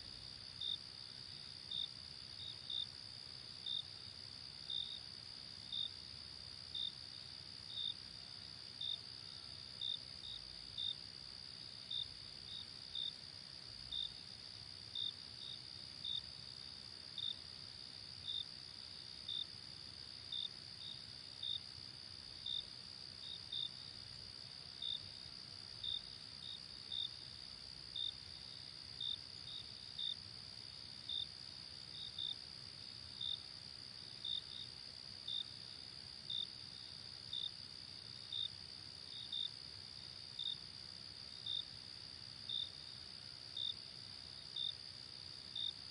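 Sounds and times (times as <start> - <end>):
insect chirping: 13.8 - 45.9.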